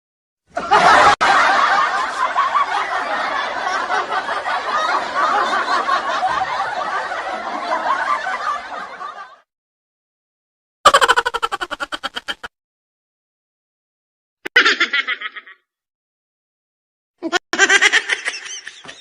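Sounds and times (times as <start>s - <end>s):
laughter: 0.5s - 9.5s, 10.9s - 12.5s, 14.5s - 15.6s, 17.2s - 19.0s.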